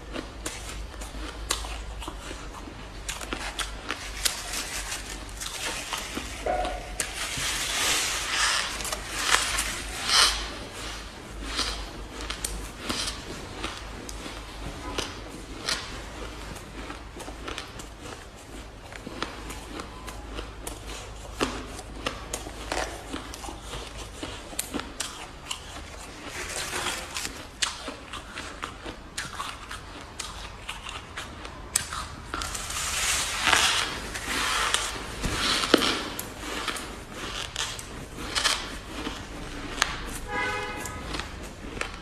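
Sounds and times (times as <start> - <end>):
frost crunching being chewed: 0.0 - 42.0.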